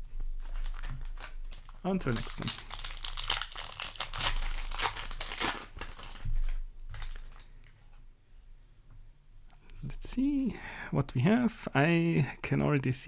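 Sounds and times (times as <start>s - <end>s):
pack rustling: 0.4s - 7.5s
foil wrapper crinkling and tearing: 0.4s - 7.8s.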